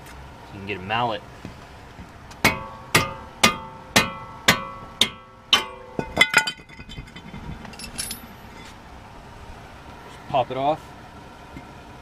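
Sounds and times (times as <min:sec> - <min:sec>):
light metal knocks clattering: 0:02.0 - 0:08.8
mallet striking ringing brake rotor: 0:02.4 - 0:08.7.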